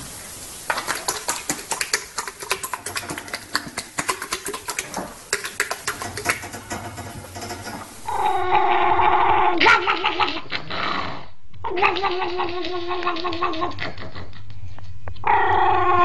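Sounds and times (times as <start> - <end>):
sharp clicks and taps: 0.7 - 8.0.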